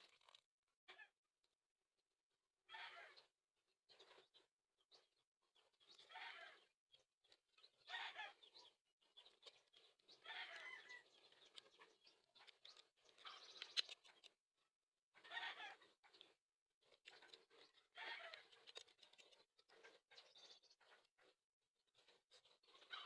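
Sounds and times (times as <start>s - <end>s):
faint bird calls: 5.9s - 6.7s, 7.8s - 9.3s, 10.1s - 11.1s, 15.2s - 15.8s, 18.0s - 18.6s, 22.7s - 23.0s.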